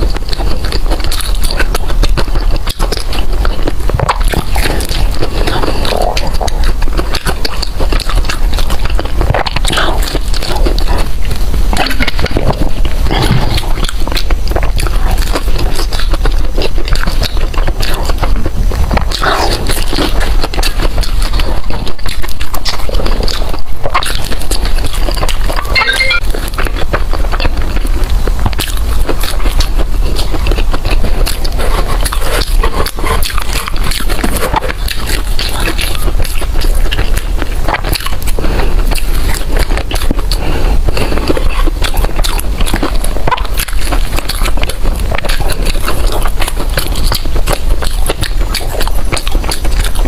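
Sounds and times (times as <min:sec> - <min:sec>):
person chewing food: 0:00.0 - 0:50.0.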